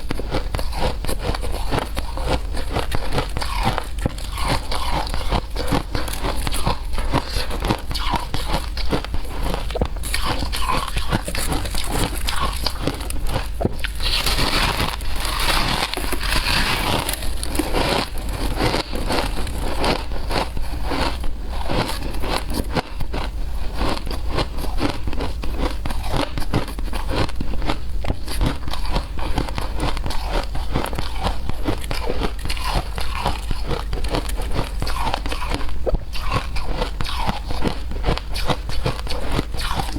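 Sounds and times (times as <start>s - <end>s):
shaved ice being crunched: 9.5s - 21.0s.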